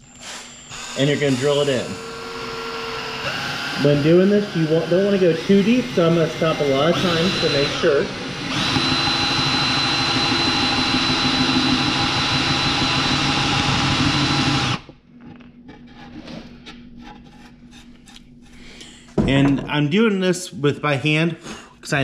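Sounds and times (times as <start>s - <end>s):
electric drill boring into wood: 0.0s - 14.9s.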